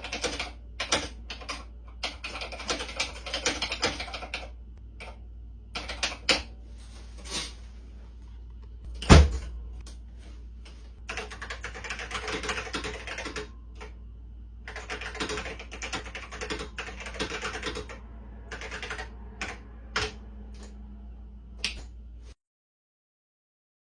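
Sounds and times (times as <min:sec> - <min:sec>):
mechanical keyboard typing: 0:00.0 - 0:06.5, 0:11.0 - 0:14.0, 0:14.7 - 0:20.7
steady low hum: 0:00.0 - 0:22.4.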